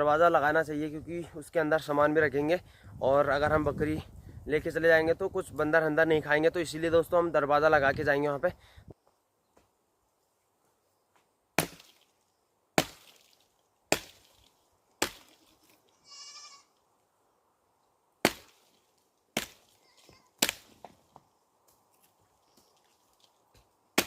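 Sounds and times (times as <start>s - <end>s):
axe chopping wood: 11.6s - 12.0s, 12.8s - 13.1s, 13.9s - 14.3s, 15.0s - 15.4s, 18.2s - 18.7s, 19.3s - 19.7s, 20.4s - 21.0s, 23.5s - 24.0s
goat bleating: 15.9s - 16.7s.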